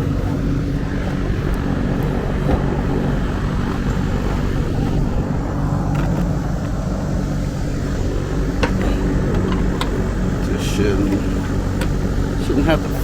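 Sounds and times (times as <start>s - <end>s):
electric fan running: 0.0s - 13.0s.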